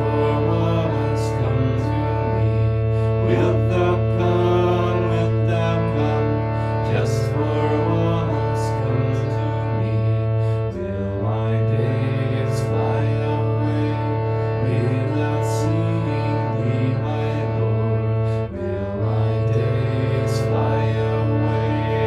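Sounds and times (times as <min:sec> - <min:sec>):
slow instrumental music: 0:00.0 - 0:22.0.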